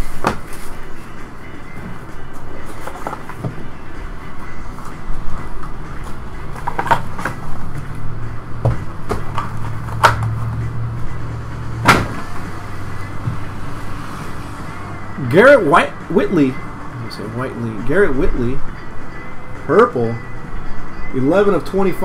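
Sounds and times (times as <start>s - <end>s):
low hum: 3.6s - 17.2s.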